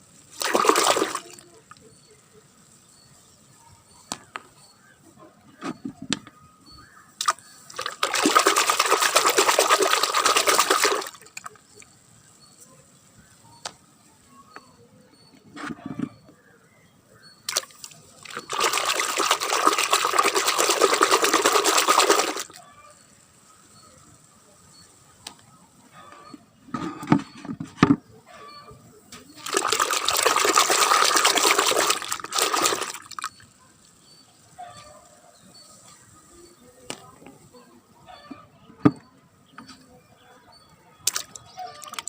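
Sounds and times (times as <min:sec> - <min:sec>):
water running: 0:00.3 - 0:01.4, 0:07.3 - 0:11.4, 0:17.5 - 0:22.6, 0:29.4 - 0:33.4.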